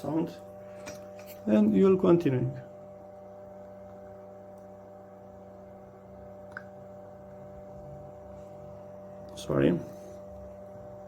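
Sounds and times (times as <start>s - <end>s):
steady electrical hum: 0.0s - 11.0s.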